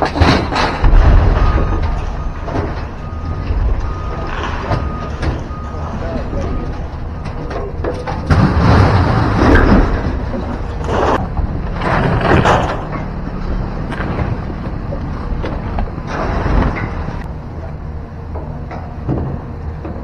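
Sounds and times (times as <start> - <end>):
scrap metal crashing: 0.0 - 13.2, 16.0 - 17.3
engine running: 0.0 - 20.0.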